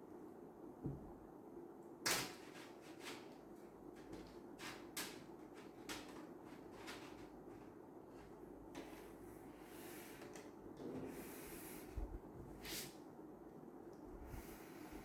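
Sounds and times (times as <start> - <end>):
faint steady hum: 0.0 - 15.0
dull knock: 0.8 - 1.2.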